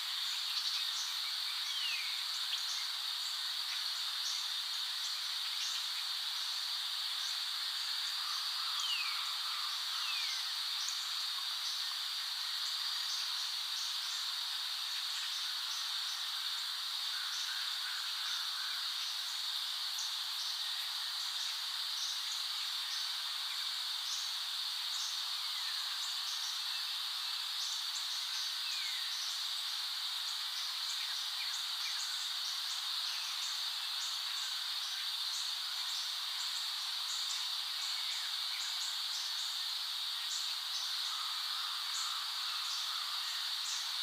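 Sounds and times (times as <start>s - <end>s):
steady high-pitched hiss: 0.0s - 44.0s.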